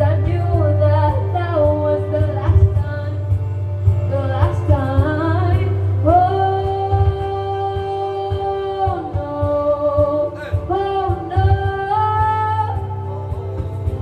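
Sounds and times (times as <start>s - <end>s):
musical accompaniment with bass: 0.0s - 14.0s
woman singing a pop ballad: 0.0s - 14.0s.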